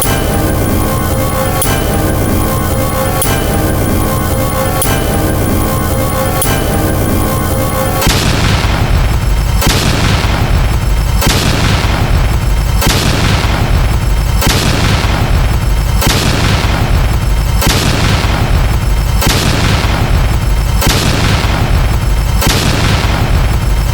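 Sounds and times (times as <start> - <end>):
explosion blasts: 0.0 - 12.2.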